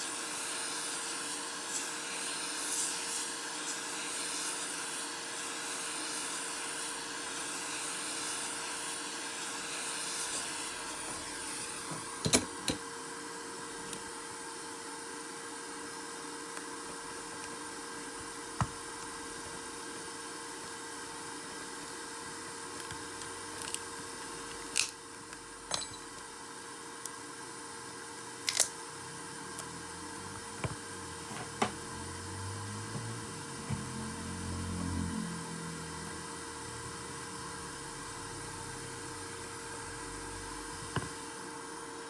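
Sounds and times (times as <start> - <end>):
steady hiss and hum: 16.8 - 41.4.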